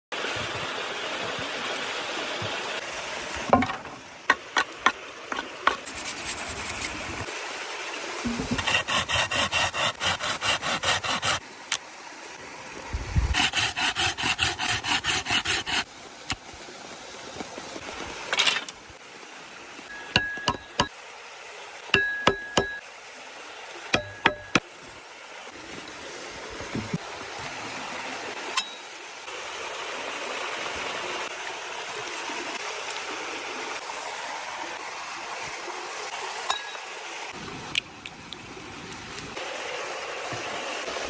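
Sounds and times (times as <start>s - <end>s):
sharp knocks: 24.0s - 24.6s.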